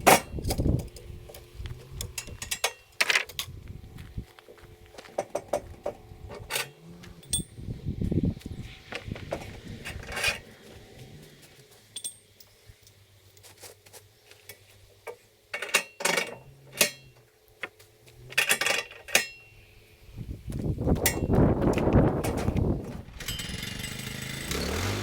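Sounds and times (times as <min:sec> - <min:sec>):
metallic clinks and clanks: 0:00.0 - 0:03.5, 0:05.2 - 0:07.6, 0:11.9 - 0:13.6, 0:15.5 - 0:17.3, 0:18.3 - 0:19.6, 0:21.0 - 0:25.0
loud motor noise: 0:05.5 - 0:11.8, 0:21.4 - 0:25.0.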